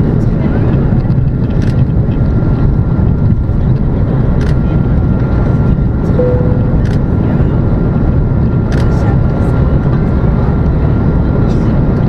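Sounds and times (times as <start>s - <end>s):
jet cabin engine and airflow noise: 0.0s - 12.0s
faint short tone: 6.1s - 7.1s.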